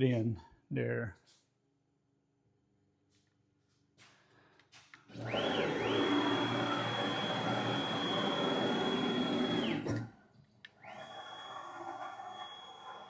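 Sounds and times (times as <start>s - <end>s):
stepper motors whining: 5.2s - 10.1s.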